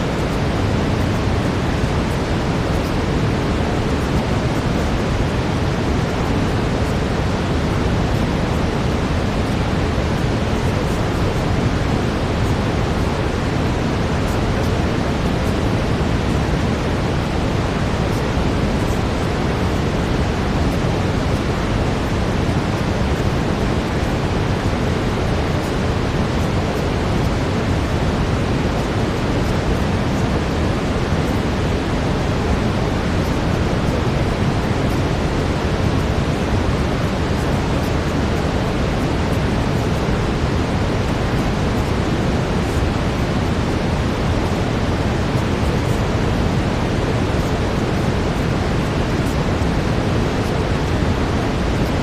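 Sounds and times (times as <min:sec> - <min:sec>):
brown noise hiss: 0:00.0 - 0:52.0.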